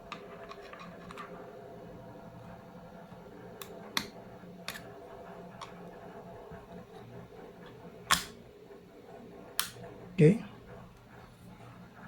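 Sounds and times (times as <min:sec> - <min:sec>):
memory stick clicking into slot: 0:08.1 - 0:08.3.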